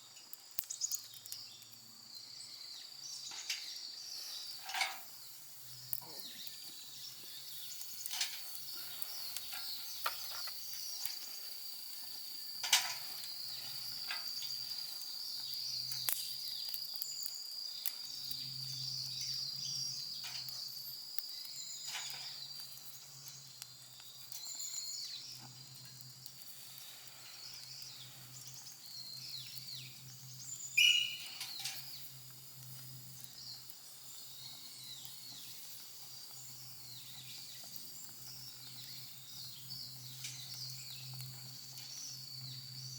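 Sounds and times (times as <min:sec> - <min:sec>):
campfire crackling and popping: 0:00.0 - 0:42.9
high-pitched insect drone: 0:30.8 - 0:31.6.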